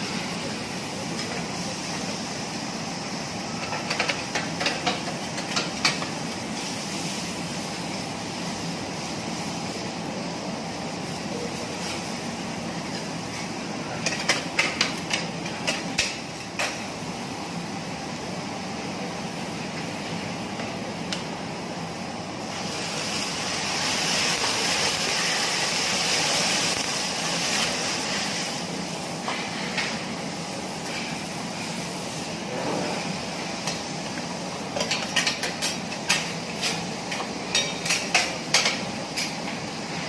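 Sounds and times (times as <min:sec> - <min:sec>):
steady rushing hiss: 0:16.1 - 0:34.8
metal spatulas clacking on griddle: 0:34.8 - 0:39.3.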